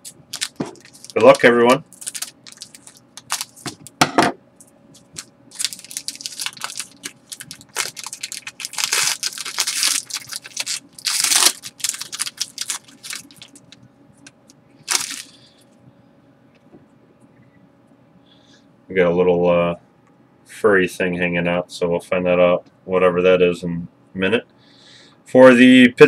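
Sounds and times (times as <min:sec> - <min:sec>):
wrapper tearing and crinkling: 0:00.0 - 0:03.9, 0:05.0 - 0:13.8, 0:14.8 - 0:15.4.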